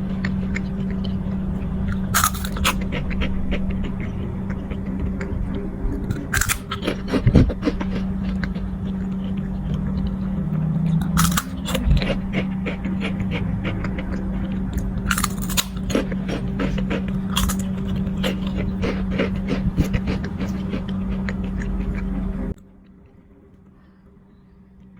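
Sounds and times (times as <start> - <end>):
crunchy snack chewing: 0.0 - 22.2
steady low hum: 0.0 - 24.9.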